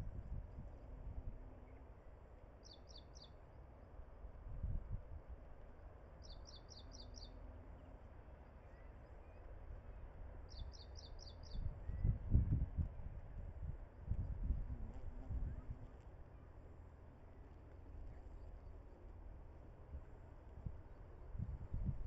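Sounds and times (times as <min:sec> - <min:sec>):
bird chirping trills: 0:02.6 - 0:03.4, 0:06.2 - 0:07.9, 0:10.5 - 0:11.7.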